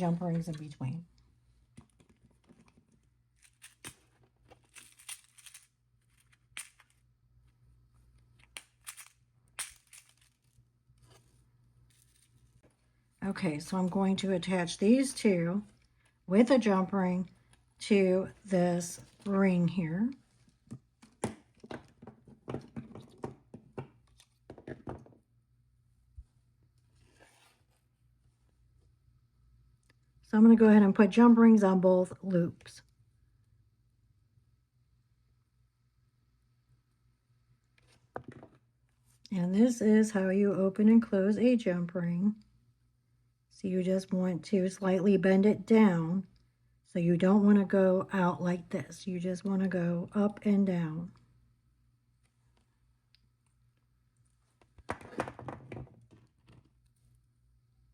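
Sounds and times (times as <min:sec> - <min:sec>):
small metal pieces clicking and rattling: 0:04.6 - 0:07.0, 0:08.4 - 0:10.5.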